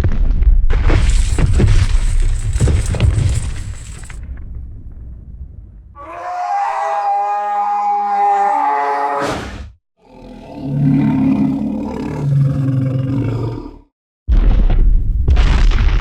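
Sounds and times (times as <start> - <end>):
high trumpeting creature call: 6.0 - 9.4
deep rumbling roar: 10.0 - 13.9
loud crashing boom: 14.3 - 16.0.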